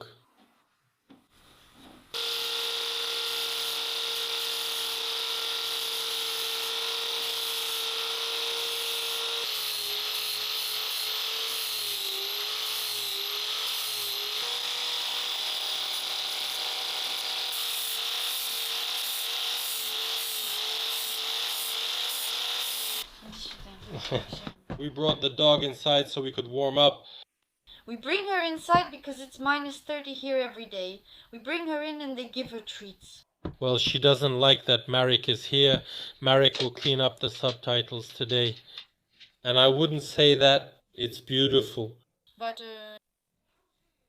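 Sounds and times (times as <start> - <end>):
electric power tool motor whine: 2.1 - 23.1.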